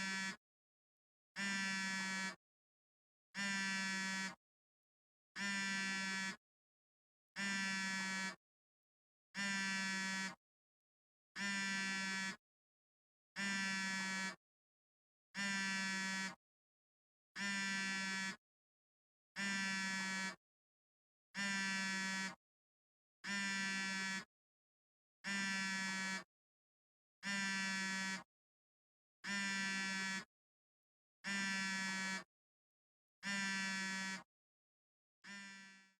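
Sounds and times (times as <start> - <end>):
smartphone vibrating buzzes: 0.0 - 0.4, 1.4 - 2.4, 3.4 - 4.4, 5.4 - 6.4, 7.4 - 8.4, 9.4 - 10.4, 11.4 - 12.4, 13.4 - 14.3, 15.4 - 16.4, 17.4 - 18.4, 19.4 - 20.4, 21.4 - 22.4, 23.2 - 24.2, 25.2 - 26.2, 27.2 - 28.3, 29.2 - 30.3, 31.2 - 32.2, 33.2 - 34.3, 35.2 - 36.0.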